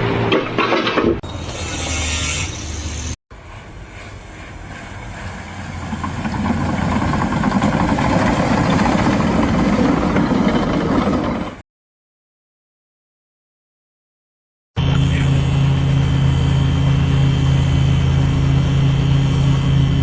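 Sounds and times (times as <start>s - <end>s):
heavy vehicle engine running: 14.8s - 20.0s.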